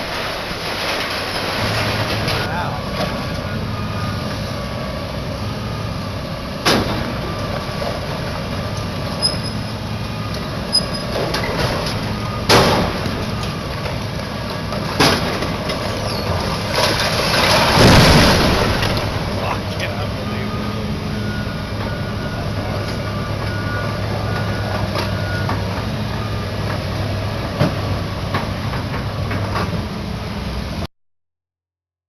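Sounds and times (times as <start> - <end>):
heavy demolition machinery running: 0.0 - 30.9
sharp impact bangs: 6.6 - 7.6, 16.4 - 20.1.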